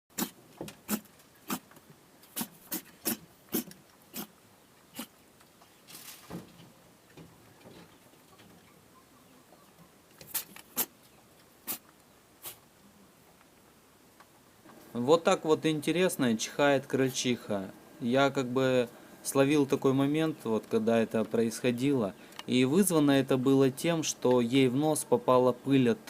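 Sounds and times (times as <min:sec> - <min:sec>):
rabbit sneezing: 0:00.1 - 0:01.6, 0:02.3 - 0:05.2, 0:10.3 - 0:11.0, 0:11.6 - 0:11.8, 0:12.4 - 0:12.7.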